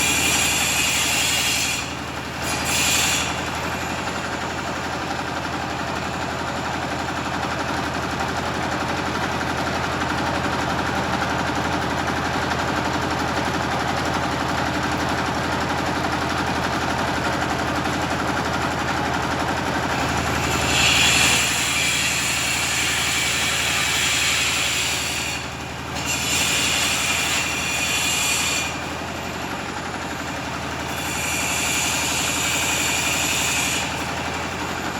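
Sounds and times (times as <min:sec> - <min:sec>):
generator engine humming: 0:01.8 - 0:02.4, 0:03.3 - 0:24.7, 0:25.4 - 0:27.7, 0:28.6 - 0:34.9
tile cutter cutting shrilly: 0:20.4 - 0:25.1.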